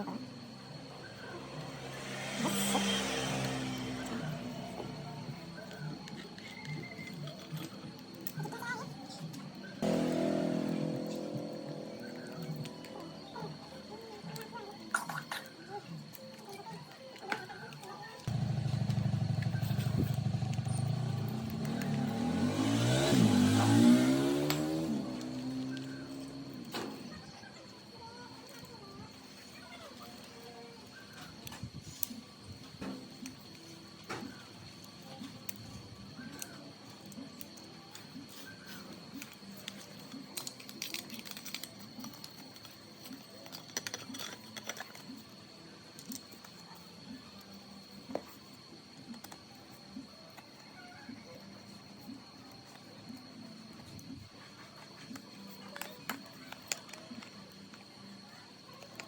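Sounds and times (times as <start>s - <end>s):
electric grinder humming: 9.8s - 11.8s.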